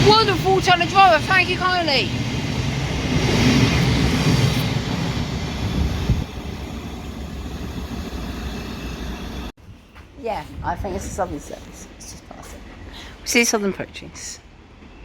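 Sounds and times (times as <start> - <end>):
electric train passing: 0.0 - 9.6.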